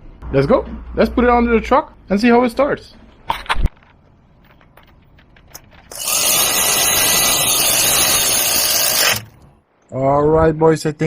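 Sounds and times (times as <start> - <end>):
cordless power tool running: 5.9 - 9.3.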